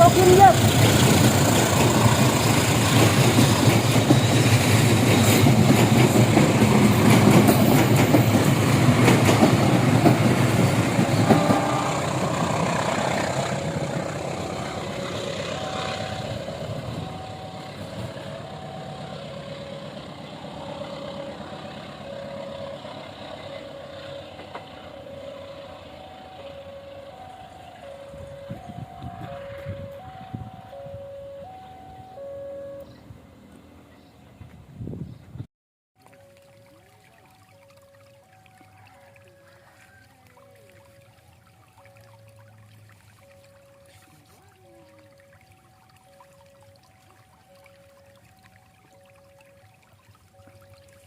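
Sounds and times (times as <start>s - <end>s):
train wheels rumbling: 0.0s - 30.8s
two-tone crossing warning signal: 11.0s - 33.0s, 43.2s - 51.0s.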